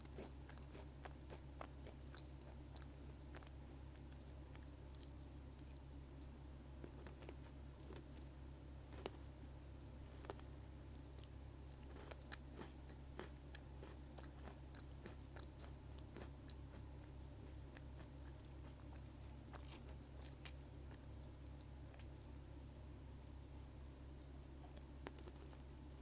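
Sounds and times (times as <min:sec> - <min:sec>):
steady low hum: 0:00.0 - 0:26.0
biscuit sticks crunching: 0:10.1 - 0:22.1, 0:24.6 - 0:26.0.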